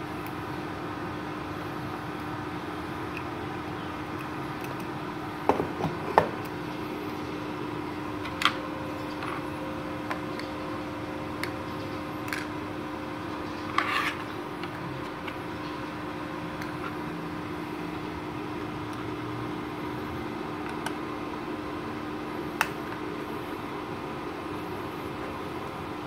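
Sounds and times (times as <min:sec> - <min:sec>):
cooling fan humming: 0:00.0 - 0:26.0.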